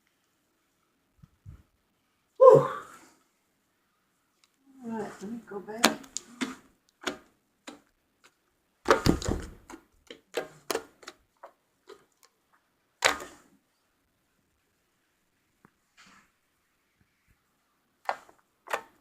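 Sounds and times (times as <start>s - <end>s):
slime squelches: 4.4s - 13.8s.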